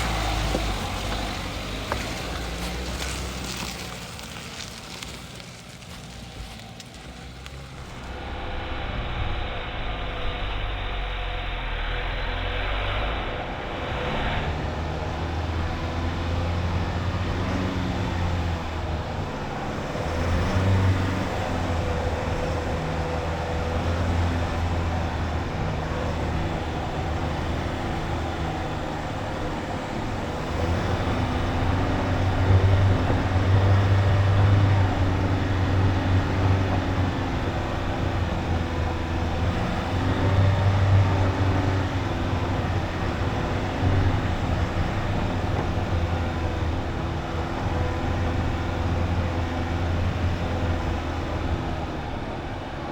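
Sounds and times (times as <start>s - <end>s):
diesel car engine running: 0.0s - 52.9s.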